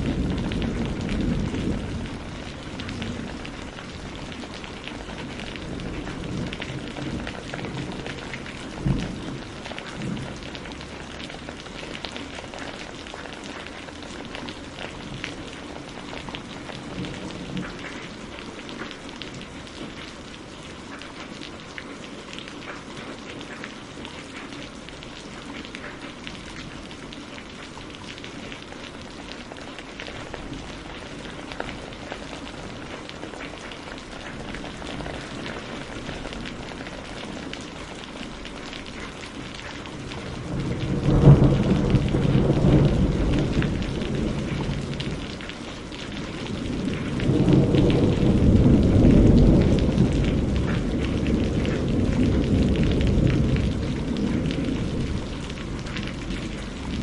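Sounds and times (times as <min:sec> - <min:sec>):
rain pattering: 0:00.0 - 0:57.0
thunder roll: 0:40.2 - 0:45.3, 0:46.5 - 0:57.0.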